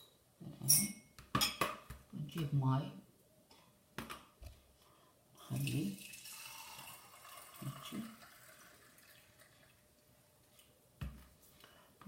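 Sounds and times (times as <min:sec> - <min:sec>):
water pouring splash: 0:05.6 - 0:09.9.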